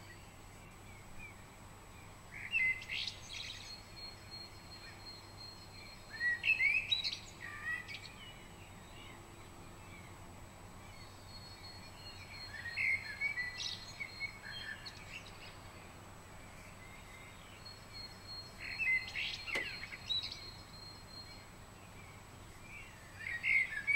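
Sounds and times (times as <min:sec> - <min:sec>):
birds chirping: 0:00.0 - 0:23.9
sharp click: 0:19.5 - 0:19.8.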